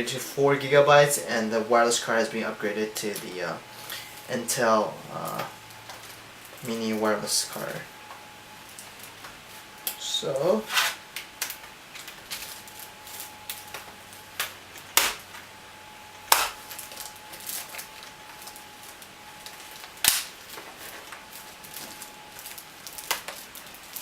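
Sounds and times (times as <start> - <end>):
loud plastic snaps: 20.0 - 20.4.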